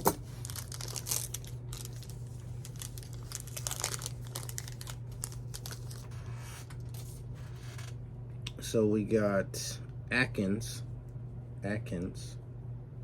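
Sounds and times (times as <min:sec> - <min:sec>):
foil wrapper crinkling and tearing: 0:00.2 - 0:07.2.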